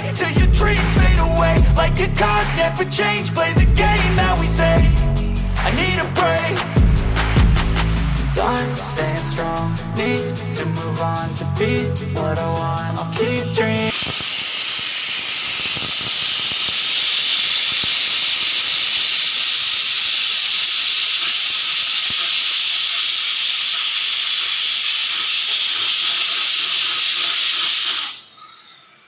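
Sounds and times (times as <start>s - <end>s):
pressure cooker steam hiss: 13.8s - 28.7s.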